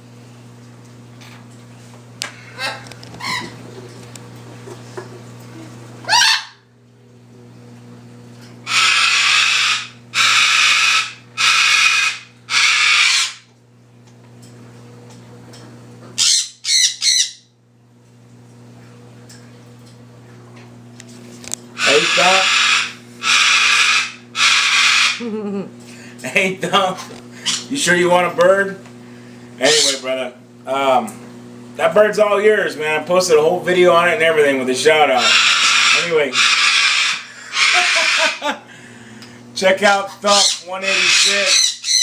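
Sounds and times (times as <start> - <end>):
cockatoo screeching: 6.0 - 6.6, 8.6 - 13.4, 16.2 - 17.4, 21.8 - 25.2, 29.6 - 30.0, 35.2 - 38.6, 40.3 - 42.0.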